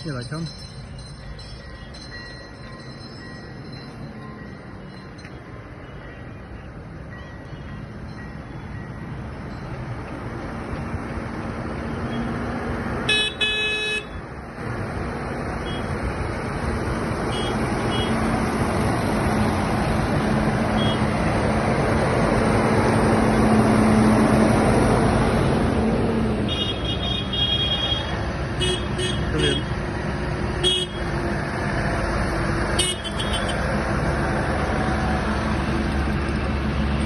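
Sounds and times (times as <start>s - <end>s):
tractor engines passing: 0.0s - 37.0s
horn tooting: 13.1s - 14.2s, 26.5s - 29.8s.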